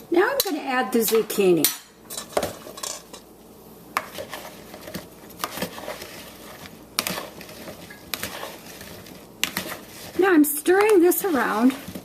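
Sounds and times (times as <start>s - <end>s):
soft gritty patter in breadcrumbs: 4.0s - 12.0s.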